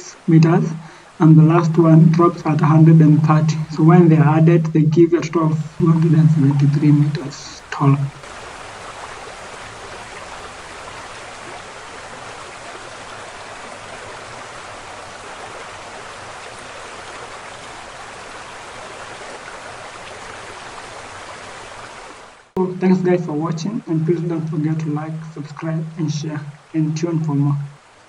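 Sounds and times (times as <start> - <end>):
waterfall rushing: 0.0 - 22.0, 22.6 - 28.0.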